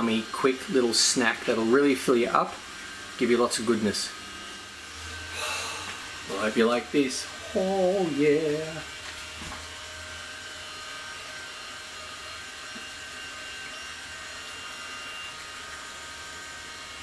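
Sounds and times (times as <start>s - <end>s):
background hum and hiss: 0.0s - 17.0s.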